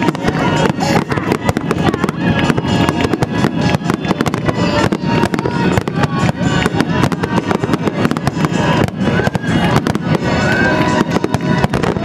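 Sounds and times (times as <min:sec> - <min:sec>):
fireworks bangs and crackles: 0:00.0 - 0:12.0
music playing: 0:00.0 - 0:12.0.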